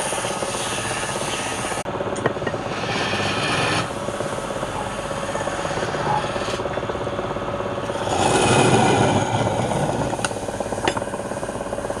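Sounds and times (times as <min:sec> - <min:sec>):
wood lathe running: 0:02.5 - 0:12.0.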